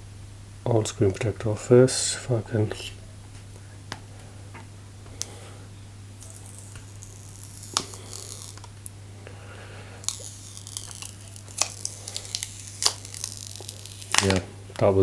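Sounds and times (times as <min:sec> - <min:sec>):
glass screen protector peeling: 0:06.1 - 0:09.0, 0:10.0 - 0:14.8.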